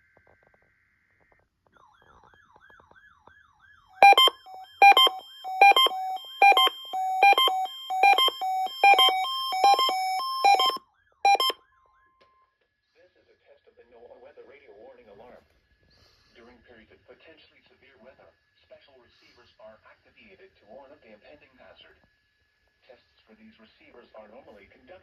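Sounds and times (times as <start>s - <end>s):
loud electronic alert beeps: 4.0s - 11.6s.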